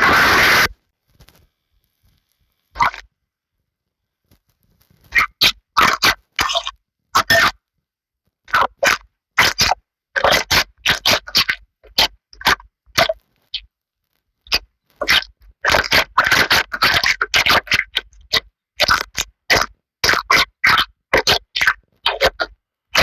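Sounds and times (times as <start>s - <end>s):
slime squeezed by hand: 2.7s - 3.1s, 5.1s - 7.6s, 8.5s - 13.6s, 14.5s - 23.0s.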